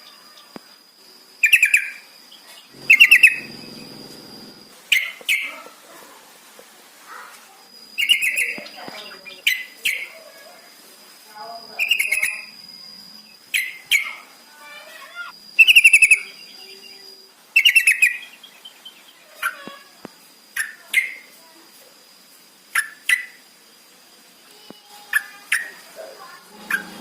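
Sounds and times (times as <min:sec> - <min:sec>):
bird chattering calls: 0:02.8 - 0:04.7, 0:26.5 - 0:27.0
faint steady high tone: 0:02.8 - 0:04.8.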